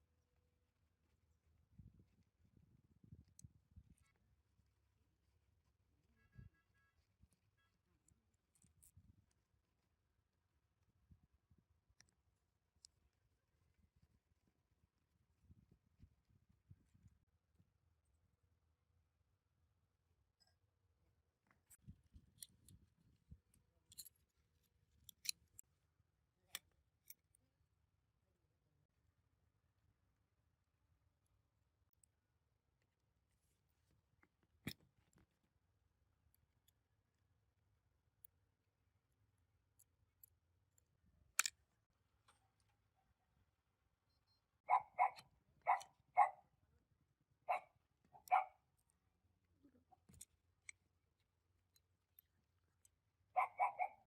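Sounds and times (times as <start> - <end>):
dog barking: 44.7 - 46.4, 47.5 - 48.6, 53.4 - 54.0.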